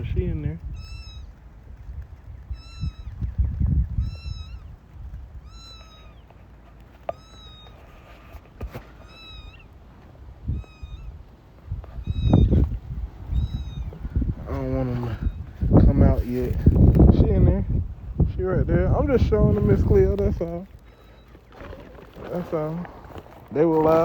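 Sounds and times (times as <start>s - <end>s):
kittens mewing: 0.7s - 1.4s, 2.4s - 15.8s, 20.1s - 24.0s.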